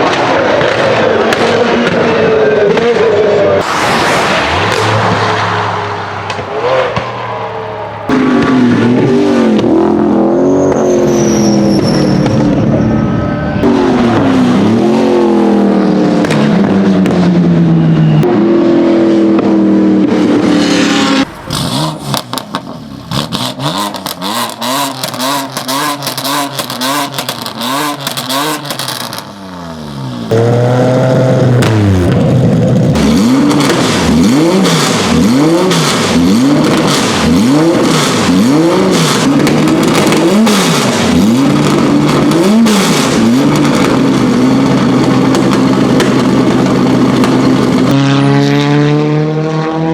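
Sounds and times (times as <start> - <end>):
exhaust pops and crackles: 0.0 - 3.6, 4.6 - 9.9, 16.0 - 17.4, 21.5 - 29.4, 30.3 - 48.0
race car engine revving: 0.0 - 49.9.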